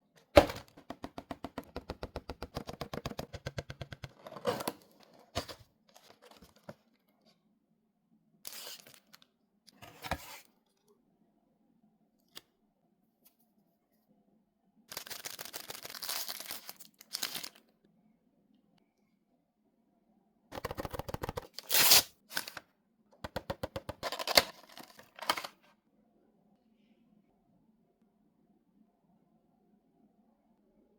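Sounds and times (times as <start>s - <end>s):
packaging crinkling: 14.9s - 17.6s, 24.0s - 25.5s
packaging ripping: 14.9s - 17.6s, 21.1s - 22.6s
packaging rustling and clicks: 14.9s - 17.6s, 23.6s - 25.6s.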